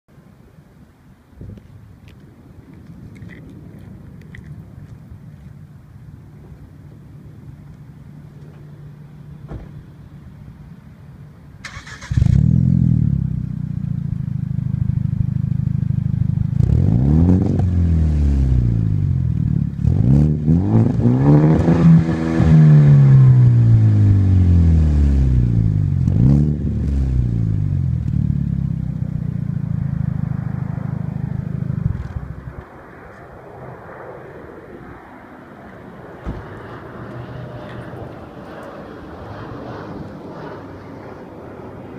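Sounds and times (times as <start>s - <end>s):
car engine idling and revving: 2.8s - 33.2s.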